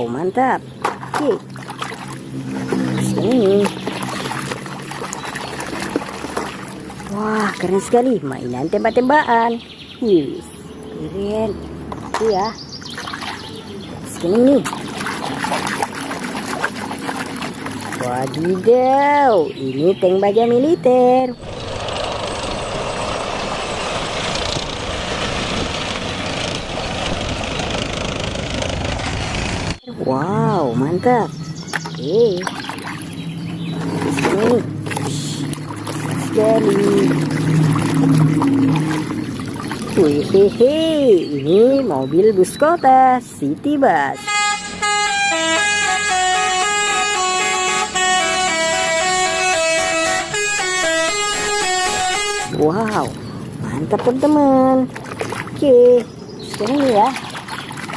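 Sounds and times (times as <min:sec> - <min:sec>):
water spraying: 0:00.7 - 0:08.1, 0:12.2 - 0:18.7, 0:21.4 - 0:29.8, 0:32.2 - 0:41.0, 0:45.5 - 0:57.9
bus horn playing melody: 0:44.1 - 0:52.6.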